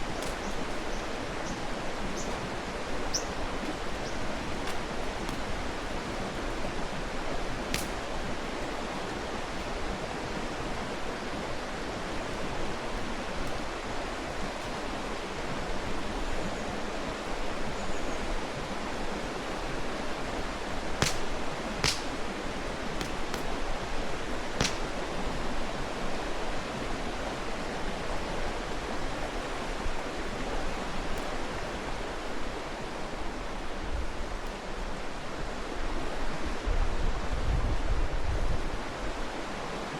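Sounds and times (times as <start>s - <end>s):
campfire wood popping: 0.0s - 10.1s, 20.9s - 25.6s
stream flowing: 0.0s - 37.0s.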